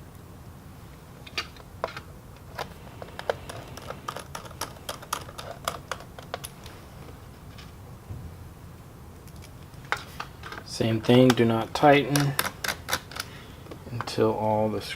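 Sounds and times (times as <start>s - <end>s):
screwdriver clicking on plastic: 2.6s - 6.5s, 12.1s - 13.3s.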